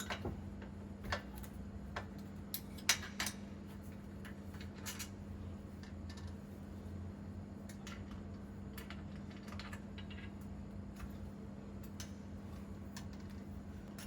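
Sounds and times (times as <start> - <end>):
steady low hum: 0.0 - 14.0
tools clicking and tapping metal: 1.1 - 3.4.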